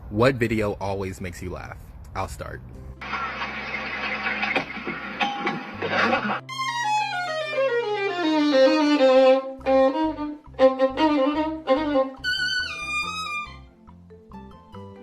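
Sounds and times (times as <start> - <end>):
violin playing: 6.4 - 13.7.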